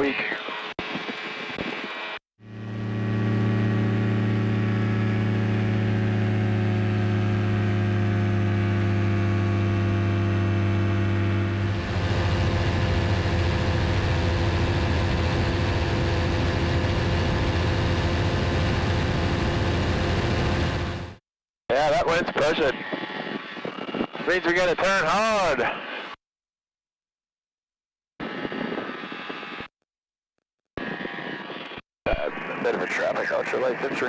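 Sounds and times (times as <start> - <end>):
ultralight aircraft engine running: 0.0 - 21.2.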